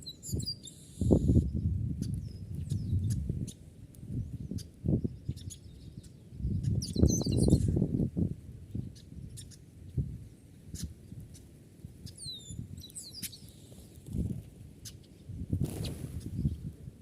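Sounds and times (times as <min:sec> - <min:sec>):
small bird chirping: 0:00.0 - 0:07.8, 0:08.7 - 0:10.0, 0:10.7 - 0:14.0.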